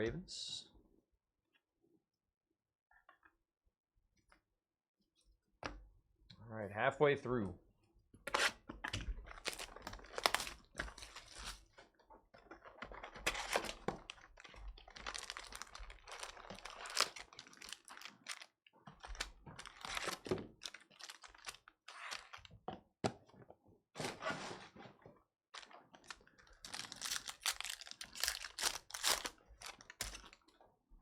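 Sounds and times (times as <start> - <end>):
trading cards flipping: 26.0 - 30.3.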